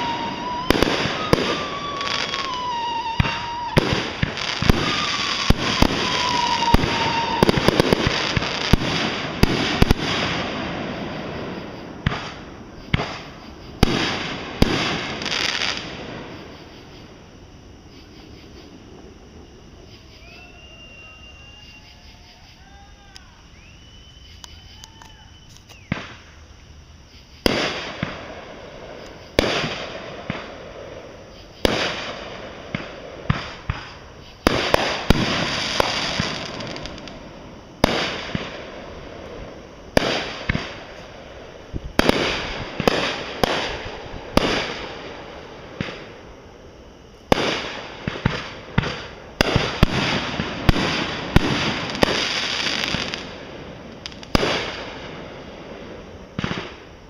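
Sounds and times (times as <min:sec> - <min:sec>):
crackling firework pops: 0:00.0 - 0:10.6, 0:12.0 - 0:16.1, 0:24.4 - 0:26.3, 0:27.4 - 0:28.3, 0:29.0 - 0:30.6, 0:31.6 - 0:37.2, 0:37.8 - 0:41.1, 0:41.7 - 0:44.9, 0:45.7 - 0:46.2, 0:47.2 - 0:55.2, 0:56.3 - 0:56.9
firework bangs: 0:00.0 - 0:16.8, 0:25.8 - 0:26.4, 0:27.4 - 0:57.0.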